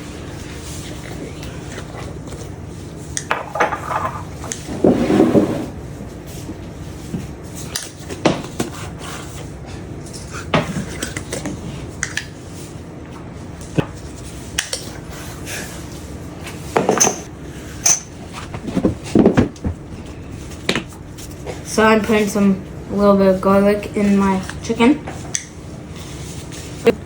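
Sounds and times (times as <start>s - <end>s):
dishes and utensils clattering: 3.3s - 5.8s, 16.8s - 21.6s.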